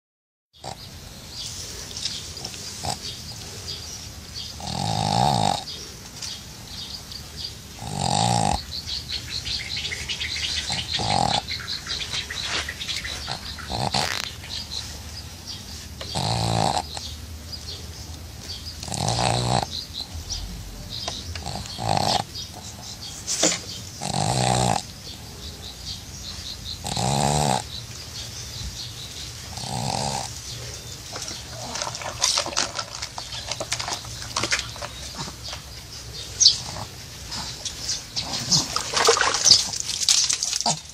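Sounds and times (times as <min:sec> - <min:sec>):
dog snoring: 0:00.6 - 0:00.9, 0:02.4 - 0:03.8, 0:04.4 - 0:05.9, 0:07.7 - 0:14.8, 0:16.0 - 0:17.1, 0:18.5 - 0:25.3, 0:26.7 - 0:27.8, 0:29.5 - 0:39.7.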